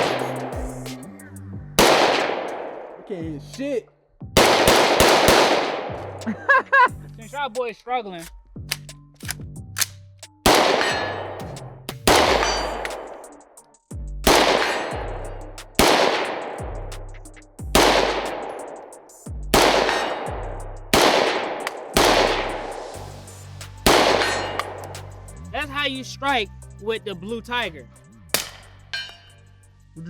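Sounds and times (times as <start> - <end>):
rifle shots: 0.0 - 0.6, 1.8 - 3.2, 4.4 - 6.3, 10.5 - 11.4, 12.0 - 13.3, 14.3 - 15.1, 15.8 - 16.7, 17.7 - 18.9, 19.5 - 23.0, 23.8 - 25.0, 28.4 - 28.8
bullets ringing on steel targets: 10.6 - 11.4, 12.2 - 13.2, 14.3 - 15.2, 19.6 - 20.3, 23.9 - 24.9, 28.4 - 29.4.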